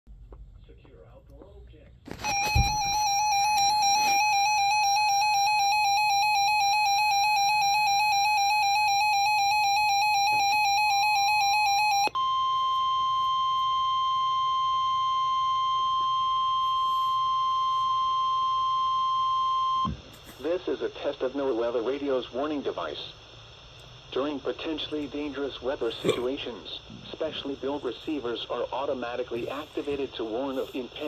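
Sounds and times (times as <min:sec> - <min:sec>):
steady warning alarm tone: 0:02.1 - 0:25.9
rapid warbling alarm beep: 0:02.2 - 0:19.9.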